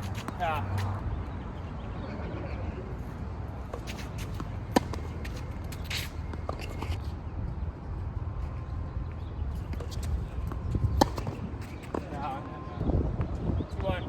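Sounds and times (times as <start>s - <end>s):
feet scuffing on court: 3.7s - 7.0s
tennis ball struck: 10.9s - 12.0s.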